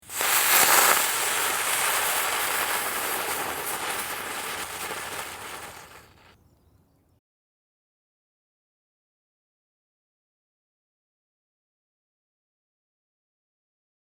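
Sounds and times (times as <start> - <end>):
firework crackling: 0.0 - 6.4.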